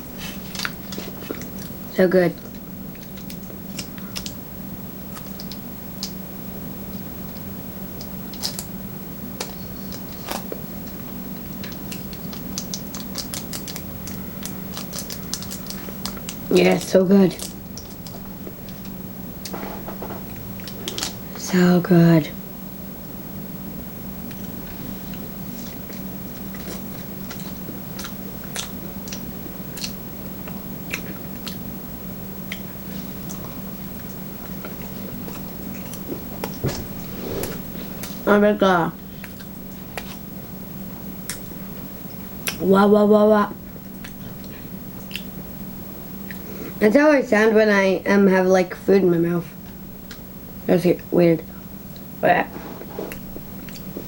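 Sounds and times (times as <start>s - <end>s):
steady low hum: 0.0s - 54.0s
wet chewing clicks and smacks: 0.4s - 1.8s, 2.4s - 4.4s, 5.1s - 6.2s, 6.9s - 19.7s, 20.3s - 21.2s, 24.2s - 31.7s, 32.4s - 36.8s, 39.2s - 40.3s, 41.2s - 41.6s, 42.4s - 42.6s, 43.9s - 45.4s, 49.6s - 50.3s, 53.1s - 54.0s.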